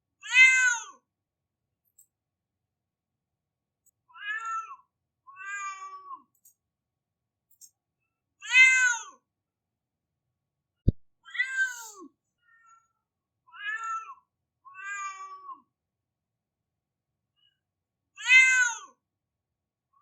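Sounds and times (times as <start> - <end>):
cat meowing: 0.2 - 0.9, 13.5 - 14.2.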